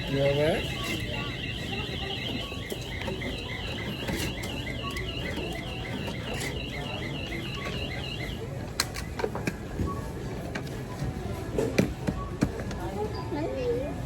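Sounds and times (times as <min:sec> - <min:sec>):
electronic alarm warbling: 0:00.0 - 0:08.5.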